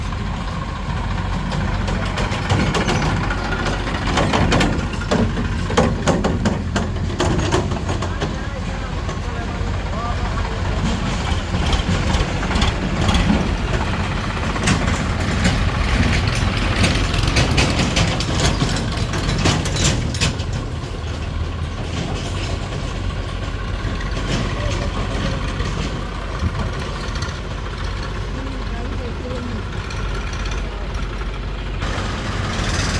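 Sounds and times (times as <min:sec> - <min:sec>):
diesel engine humming: 0:00.0 - 0:32.9
sharp knocks and clatter: 0:00.0 - 0:32.9.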